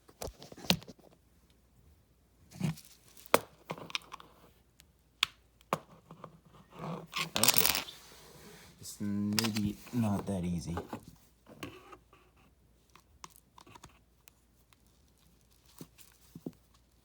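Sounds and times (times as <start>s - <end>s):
plastic rustling and scraping: 14.8s - 17.0s.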